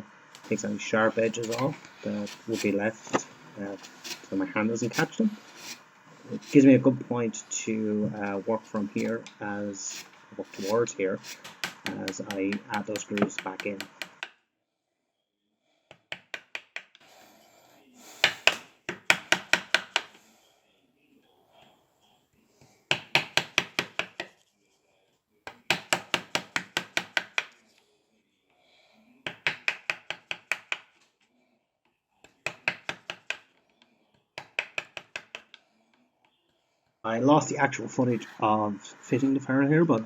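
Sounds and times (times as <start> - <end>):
scraping: 0.4 - 14.0
tool knocking on wooden handle: 11.4 - 14.3, 18.2 - 20.1.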